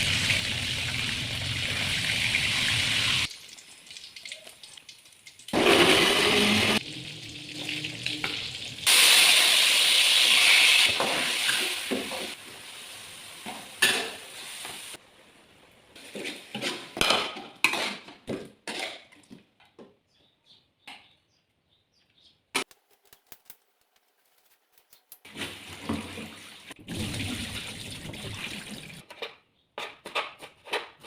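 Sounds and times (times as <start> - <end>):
food sizzling in a pan: 0.0 - 15.0.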